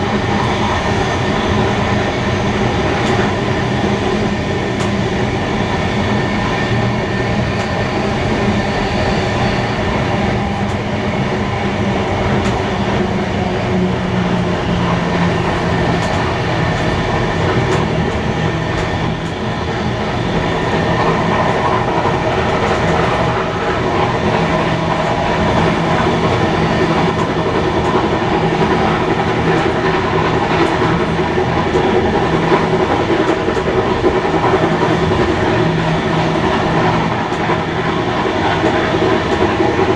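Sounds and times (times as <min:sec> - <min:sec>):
train wheels rumbling on rails: 0:00.0 - 0:39.9
wheels clickety-clack: 0:00.0 - 0:39.9.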